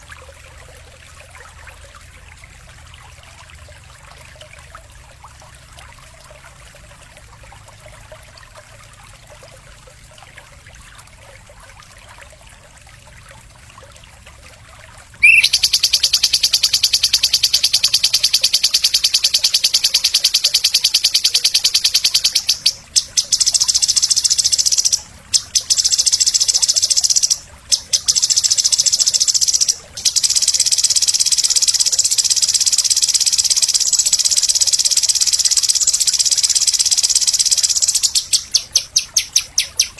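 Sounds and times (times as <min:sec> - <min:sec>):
faint background hiss: 0:12.8 - 0:39.9
songbird rapid buzzing trill: 0:15.2 - 0:39.9.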